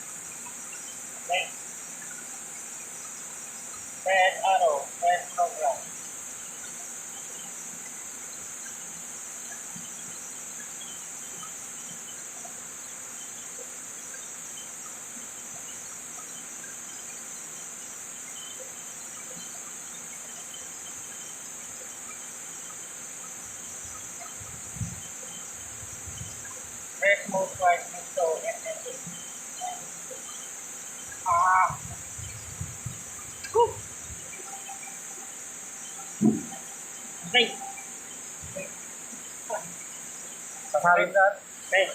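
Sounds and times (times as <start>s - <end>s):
insects chirping: 0.0s - 41.9s
soft low knock: 36.2s - 36.6s.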